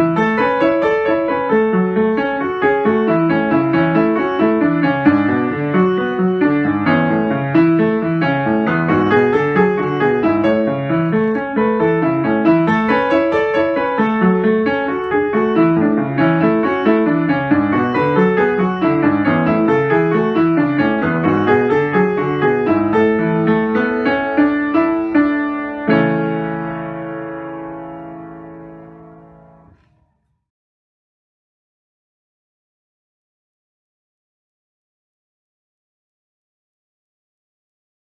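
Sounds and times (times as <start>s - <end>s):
solo piano music: 0.0s - 30.1s.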